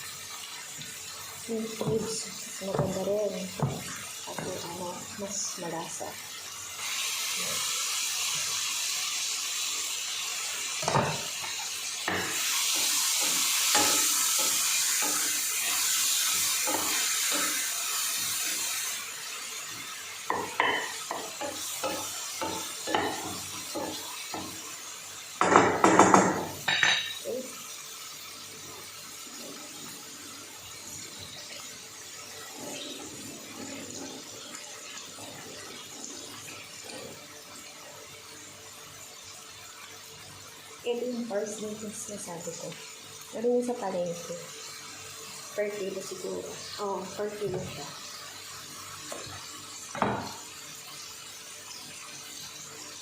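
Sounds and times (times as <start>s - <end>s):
utensils clinking on pots and dishes: 20.3s - 24.6s, 25.4s - 27.4s.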